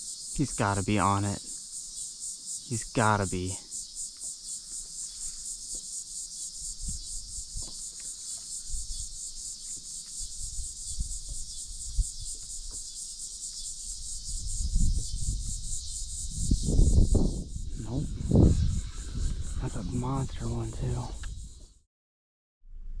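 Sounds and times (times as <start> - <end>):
insects trilling: 0.0 - 21.8.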